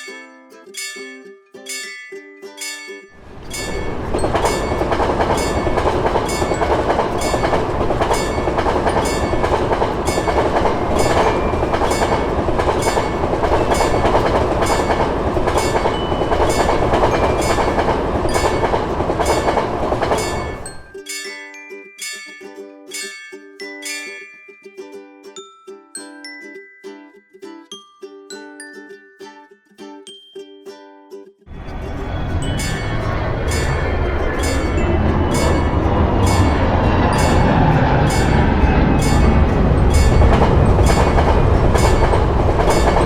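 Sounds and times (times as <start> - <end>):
train passing rumble: 3.2 - 20.9, 31.5 - 43.0.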